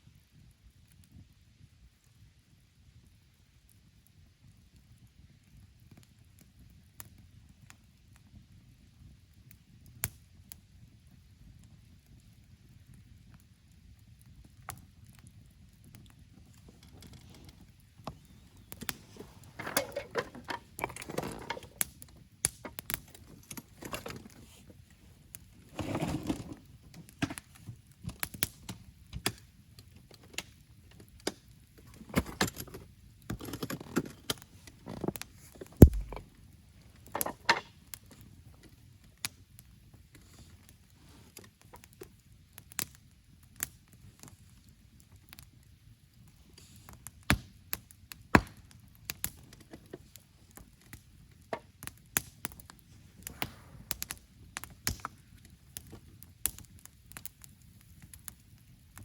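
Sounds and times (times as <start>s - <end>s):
rustling: 16.5s - 21.8s, 33.8s - 36.4s
gear clinking and knocking: 35.8s - 36.2s
heavy thump: 35.8s - 36.2s.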